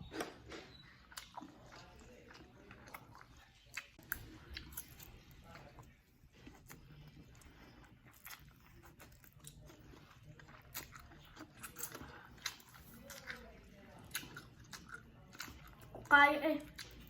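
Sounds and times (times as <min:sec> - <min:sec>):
chewing and mouth sounds: 0:00.0 - 0:17.0.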